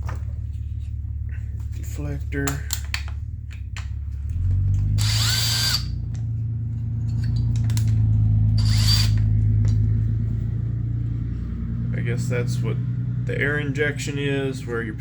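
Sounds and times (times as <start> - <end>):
steady low hum: 0.0 - 15.0
power drill whining: 5.0 - 6.0, 8.6 - 9.2.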